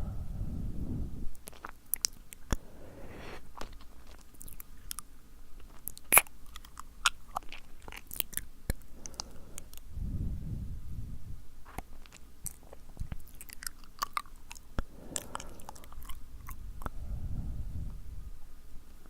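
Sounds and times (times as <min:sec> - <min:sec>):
breathy rush: 0:02.5 - 0:03.5
lip smacks: 0:11.7 - 0:17.0.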